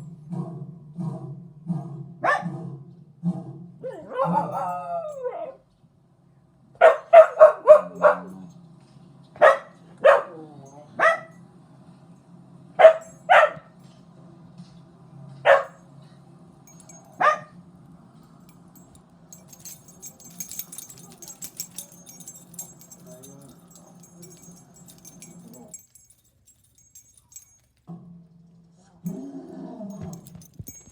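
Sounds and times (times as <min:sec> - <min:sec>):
dog barking: 0:02.2 - 0:02.6, 0:03.9 - 0:05.6, 0:06.8 - 0:08.5, 0:09.4 - 0:11.4, 0:12.8 - 0:13.7, 0:15.4 - 0:15.8, 0:17.2 - 0:17.6
steady low hum: 0:10.6 - 0:30.9.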